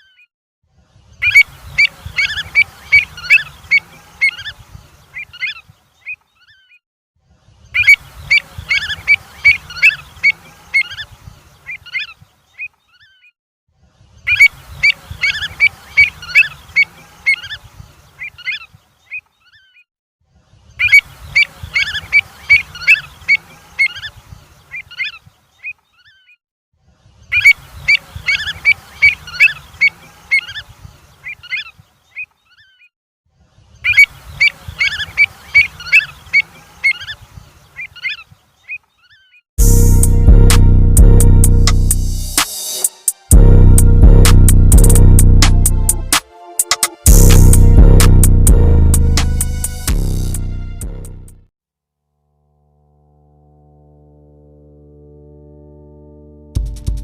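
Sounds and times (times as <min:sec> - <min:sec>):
low rumble: 0:39.6 - 0:42.4, 0:43.3 - 0:46.1, 0:47.1 - 0:51.3.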